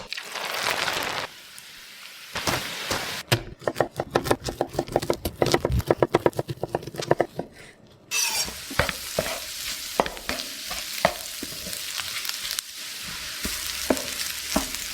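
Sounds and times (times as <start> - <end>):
rice sizzling in a hot pan: 0.1 - 3.2, 8.2 - 14.9.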